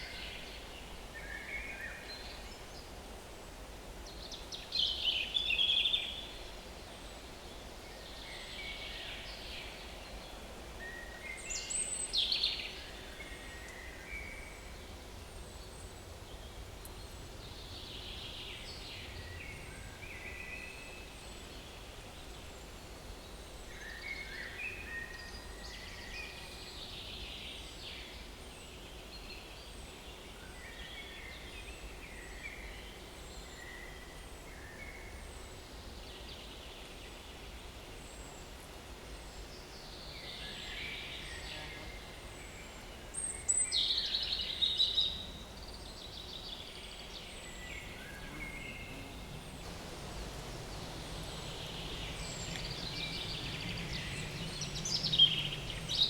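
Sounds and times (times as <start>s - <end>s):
steady background hiss: 0.0s - 56.0s
songbirds singing: 39.4s - 56.0s.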